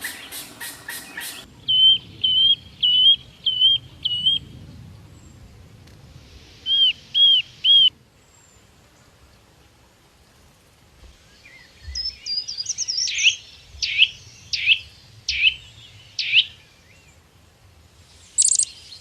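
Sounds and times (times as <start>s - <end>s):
bird singing harsh and whistled notes: 0.0s - 4.5s, 6.6s - 7.9s, 11.5s - 17.1s, 18.2s - 19.0s.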